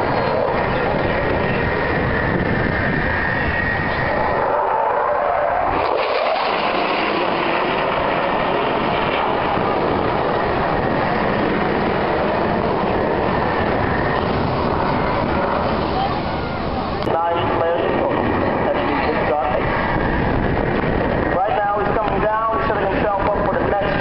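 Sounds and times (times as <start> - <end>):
aircraft engine roaring: 0.0 - 24.0
faint engine whine: 0.0 - 24.0.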